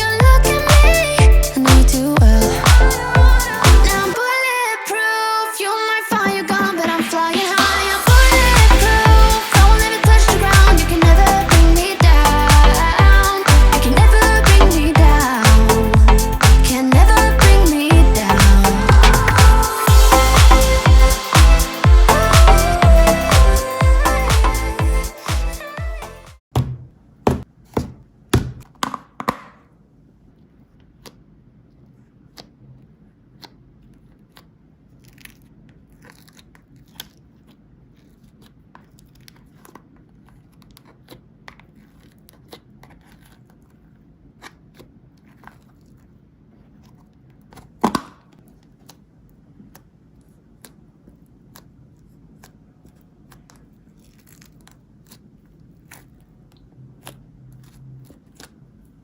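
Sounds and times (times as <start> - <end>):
slime clicking and crackling: 33.3 - 47.8, 49.6 - 59.0.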